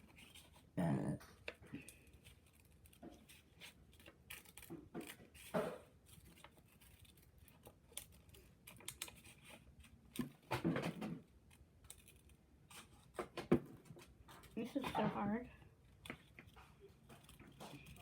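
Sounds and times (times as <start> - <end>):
scissors snipping paper: 0.0 - 18.0
paper rustling: 1.4 - 18.0.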